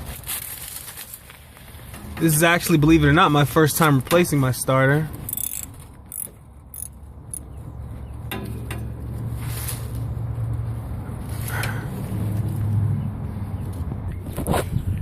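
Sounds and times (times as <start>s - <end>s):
socket ratchet clicking: 5.3s - 7.5s.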